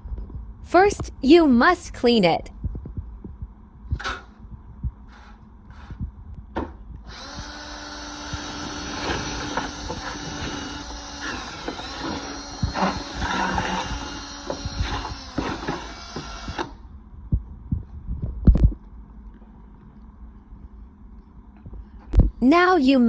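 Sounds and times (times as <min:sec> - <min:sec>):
machine motor humming and hissing: 0:07.1 - 0:16.7.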